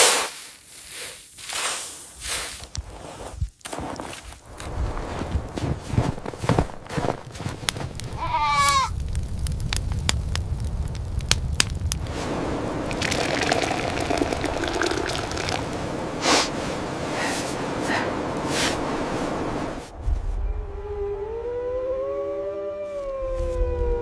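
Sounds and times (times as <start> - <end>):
crunching footsteps: 0.8 - 9.4
steady rushing noise with crackles: 2.8 - 20.5
wavering animal bleat: 8.2 - 8.9.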